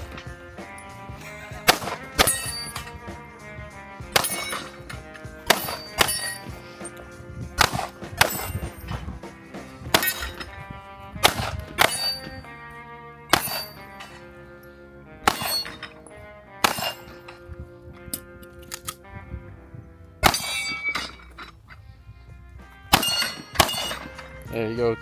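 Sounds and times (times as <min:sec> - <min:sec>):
gunshots: 0:00.0 - 0:12.5, 0:13.3 - 0:14.3, 0:15.2 - 0:17.5, 0:20.2 - 0:21.1, 0:22.9 - 0:24.5
steel plate target clanging: 0:00.0 - 0:12.6, 0:13.3 - 0:14.3, 0:15.2 - 0:17.5, 0:20.2 - 0:21.8, 0:22.9 - 0:24.9.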